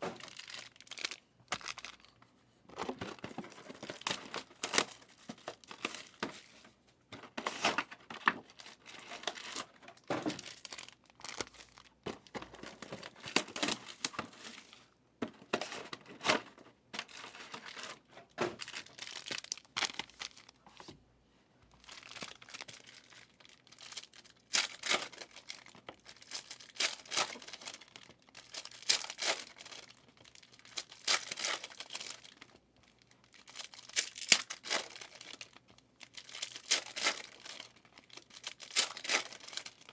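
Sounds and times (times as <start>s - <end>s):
wrappers torn and crinkled: 0.1s - 2.2s, 7.5s - 12.0s, 17.0s - 20.6s, 21.8s - 39.9s.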